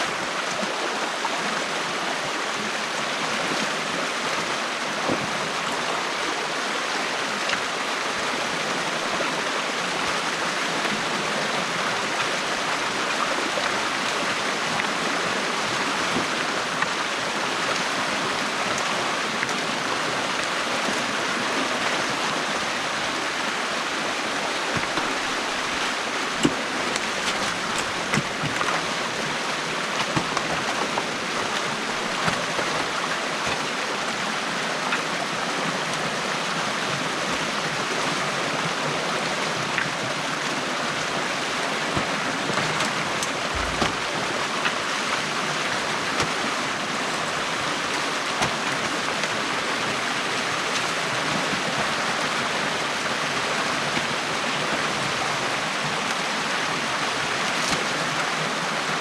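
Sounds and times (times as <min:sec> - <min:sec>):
stream water rushing: 0:00.0 - 0:59.0
small clicks and splashes: 0:24.4 - 0:36.1, 0:39.7 - 0:52.1, 0:57.0 - 0:58.4.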